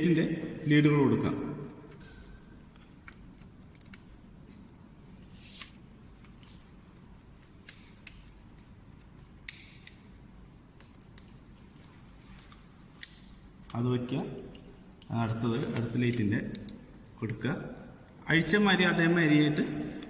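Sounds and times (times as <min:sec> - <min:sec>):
small clicks and light scrapes: 0:01.9 - 0:10.1, 0:10.7 - 0:13.8.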